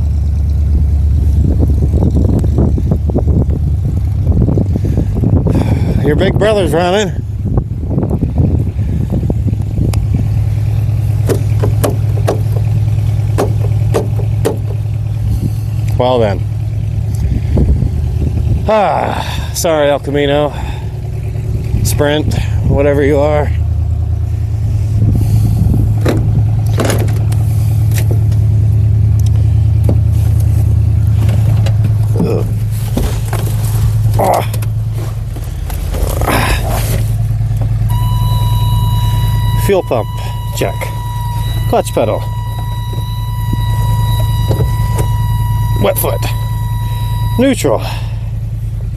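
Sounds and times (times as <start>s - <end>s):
vehicle engine idling: 0.0s - 48.9s
sharp clicks or knocks: 11.2s - 12.7s, 13.4s - 14.8s
short scuffing noises: 32.7s - 34.0s
high-pitched warning buzzer: 37.9s - 47.6s.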